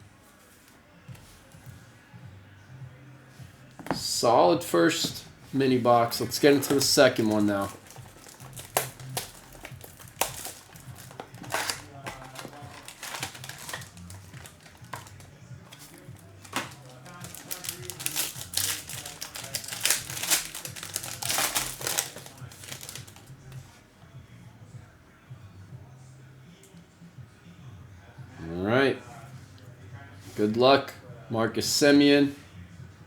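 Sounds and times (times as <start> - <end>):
packaging crinkling and rustling: 5.0 - 23.6.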